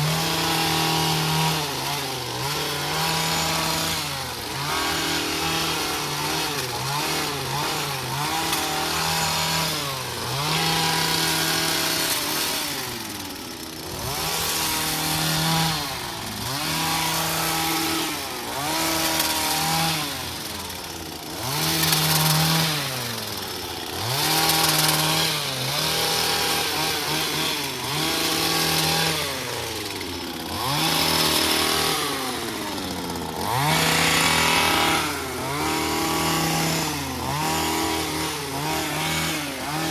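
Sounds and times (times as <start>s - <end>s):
rasping cutting noise: 0.0s - 39.9s
two-stroke engine revving: 0.0s - 39.9s.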